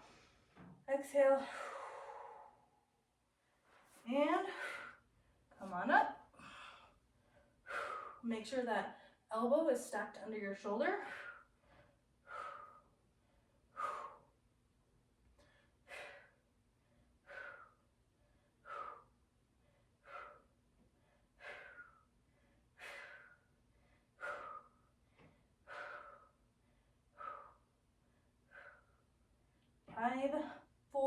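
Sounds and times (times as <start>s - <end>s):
woman breathing hard: 1.4s - 3.0s, 4.4s - 5.4s, 6.3s - 8.2s, 11.0s - 14.4s, 15.3s - 29.8s.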